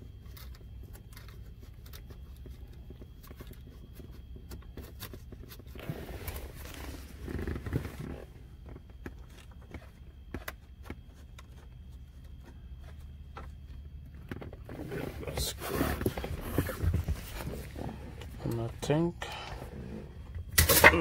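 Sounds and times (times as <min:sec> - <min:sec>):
steady low hum: 0:00.0 - 0:21.0
rustling scrape: 0:05.4 - 0:08.4, 0:14.6 - 0:18.2.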